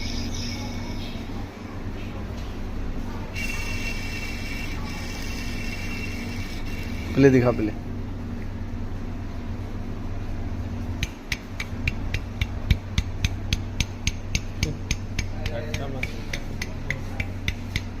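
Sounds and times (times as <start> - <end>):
engine running: 2.7 - 18.0
regular engine knock: 10.9 - 18.0.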